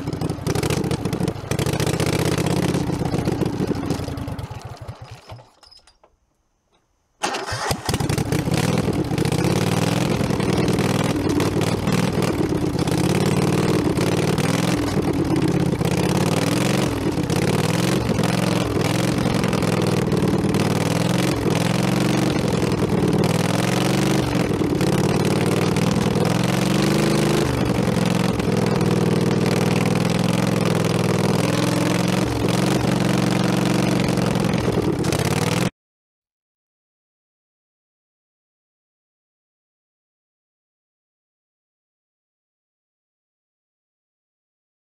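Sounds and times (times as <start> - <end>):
engine running: 0.0 - 5.6, 7.2 - 35.7.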